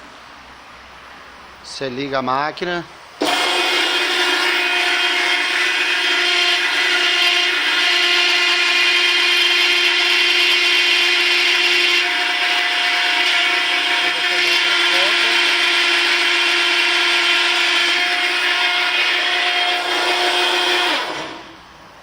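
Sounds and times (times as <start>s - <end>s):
hydraulic machine whine: 3.0s - 22.0s
fixed machine tones: 13.6s - 17.6s.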